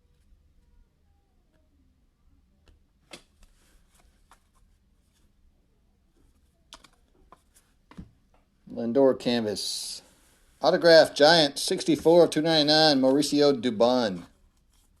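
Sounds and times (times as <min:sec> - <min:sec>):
cards clicking and rustling: 0:06.7 - 0:08.1.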